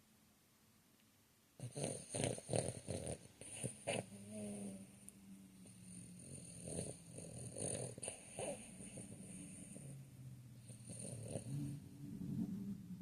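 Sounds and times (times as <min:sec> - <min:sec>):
dog snoring: 0:01.6 - 0:12.5.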